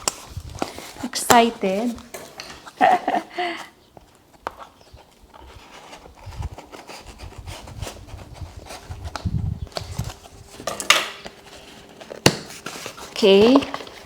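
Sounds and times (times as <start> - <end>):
packaging rustling and clicking: 3.9 - 14.0.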